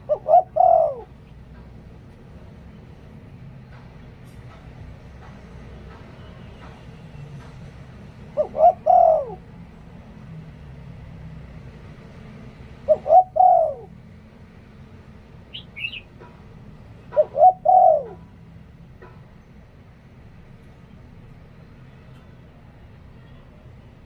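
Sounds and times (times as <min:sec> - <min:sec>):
dove cooing: 0:00.0 - 0:01.4, 0:08.2 - 0:09.5, 0:12.8 - 0:13.9, 0:15.5 - 0:16.1, 0:17.1 - 0:18.3
high bird chirp: 0:15.5 - 0:16.1.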